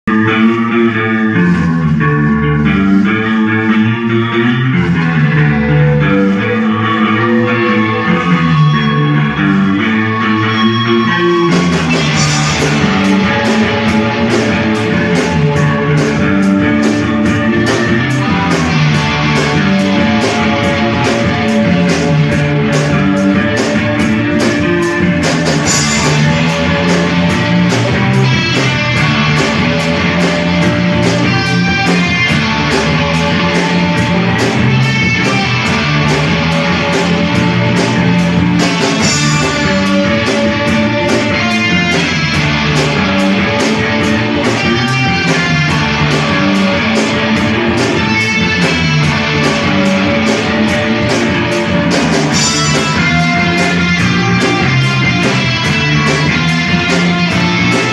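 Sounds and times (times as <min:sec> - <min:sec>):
bass line: 0:00.0 - 0:57.9
electric guitar playing: 0:00.0 - 0:57.9
drum beat: 0:11.5 - 0:57.9.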